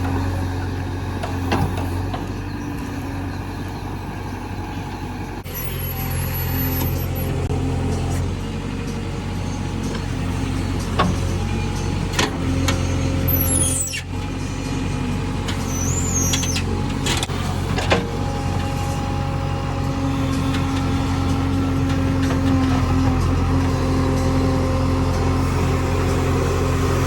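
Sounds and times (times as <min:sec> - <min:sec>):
diesel engine running: 0:00.0 - 0:27.0
high squeals: 0:13.3 - 0:14.1, 0:15.6 - 0:16.7.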